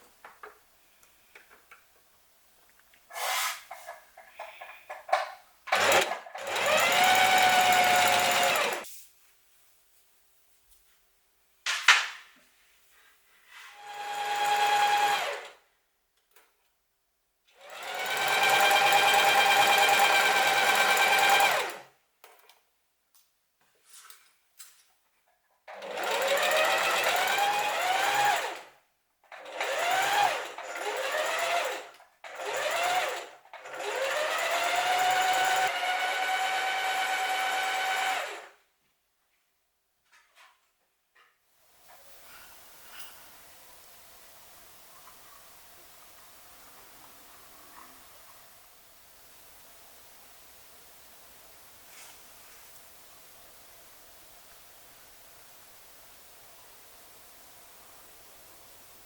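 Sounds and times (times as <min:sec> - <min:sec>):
electric sewing machine whining: 0:05.7 - 0:08.8, 0:13.8 - 0:15.6, 0:17.6 - 0:21.9, 0:25.7 - 0:28.7, 0:29.3 - 0:38.6.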